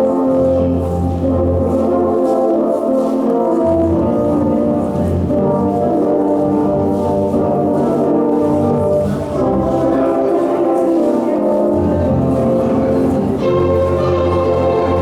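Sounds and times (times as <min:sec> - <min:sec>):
orchestral dance music with brass: 0:00.0 - 0:15.0.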